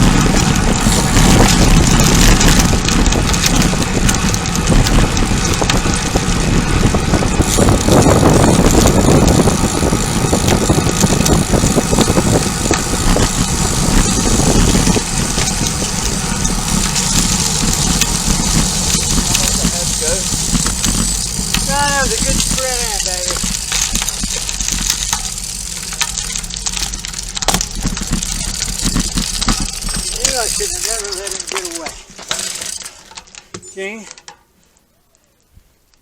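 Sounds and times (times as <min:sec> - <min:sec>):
wind on microphone: 0:00.0 - 0:22.6
bicycle tyre road noise: 0:00.0 - 0:36.0.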